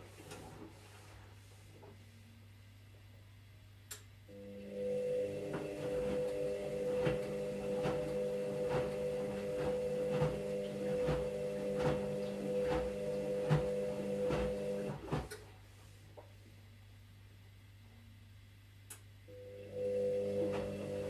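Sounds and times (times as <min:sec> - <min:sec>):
washing machine motor hum: 0:04.3 - 0:15.9, 0:19.3 - 0:21.0.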